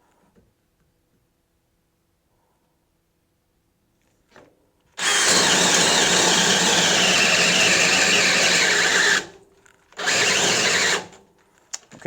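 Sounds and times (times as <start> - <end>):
cordless drill boring into wood: 5.0 - 9.4, 10.0 - 11.2.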